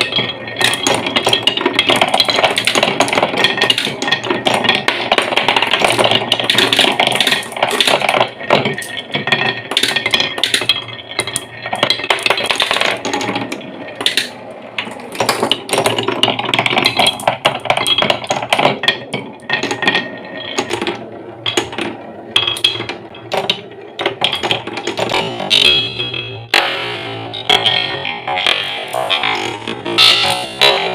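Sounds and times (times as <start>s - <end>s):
marbles rolling down wooden run: 0.0s - 26.5s.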